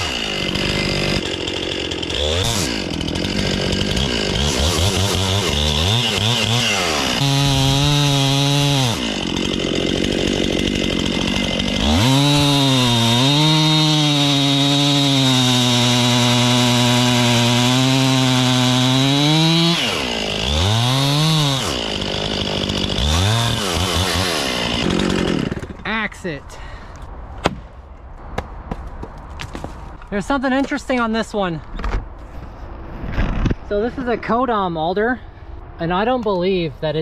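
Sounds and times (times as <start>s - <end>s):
chainsaw cutting wood: 0.0s - 25.9s.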